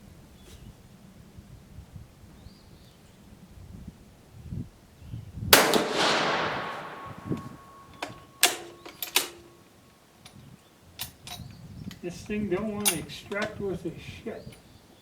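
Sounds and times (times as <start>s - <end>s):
rifle shot echoing: 5.5s - 8.8s
rifle bolt metallic clicks: 5.6s - 9.5s.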